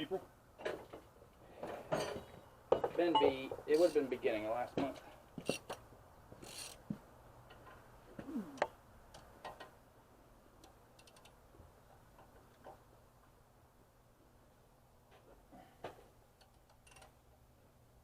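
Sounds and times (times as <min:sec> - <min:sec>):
metallic clicks of hand tools: 0:10.6 - 0:11.4, 0:16.4 - 0:17.2.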